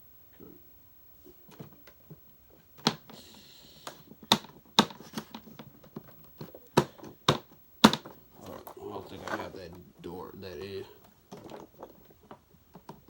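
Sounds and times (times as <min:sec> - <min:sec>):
plastic scraping hiss: 0:01.2 - 0:10.0
plastic vacuum parts clicking: 0:03.8 - 0:09.5.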